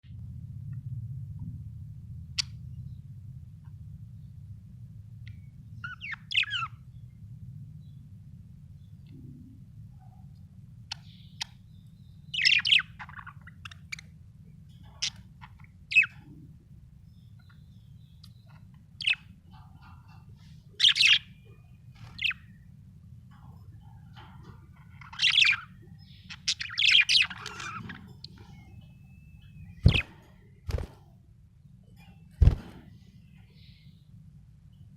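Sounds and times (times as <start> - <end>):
faint low hum: 0.0 - 34.9
budgerigar chirping and squawking: 5.8 - 6.9, 10.9 - 11.7, 12.3 - 14.1, 14.8 - 16.2, 17.1 - 22.6, 23.9 - 30.3.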